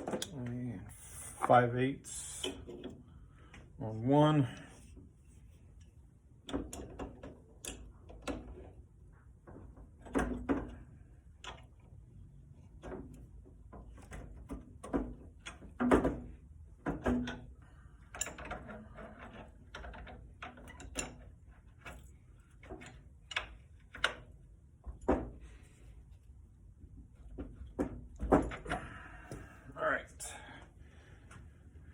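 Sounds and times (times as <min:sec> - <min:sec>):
metal tools clicking and clanking: 0:18.1 - 0:24.2.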